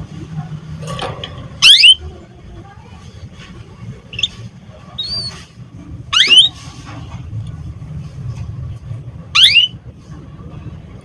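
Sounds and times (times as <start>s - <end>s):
canary upward-sweeping chirp: 6.2s - 6.6s, 9.4s - 9.7s.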